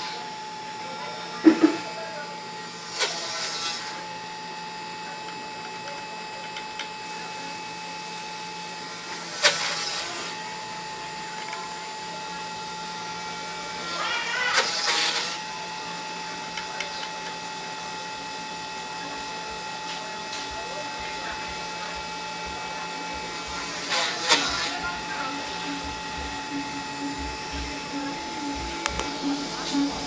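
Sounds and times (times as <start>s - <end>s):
stepper motors humming: 0.0s - 30.0s
machine movement noise: 22.6s - 30.0s.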